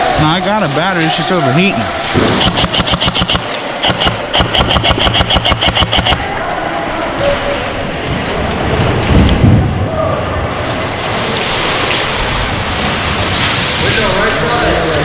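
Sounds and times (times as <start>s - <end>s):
airsoft gun firing full-auto: 2.2s - 6.3s.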